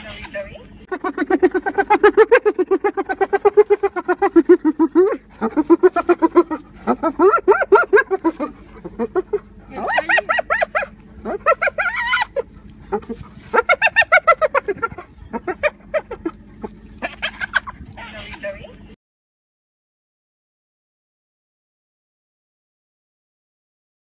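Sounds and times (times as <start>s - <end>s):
hyena giggling: 0.0s - 18.8s.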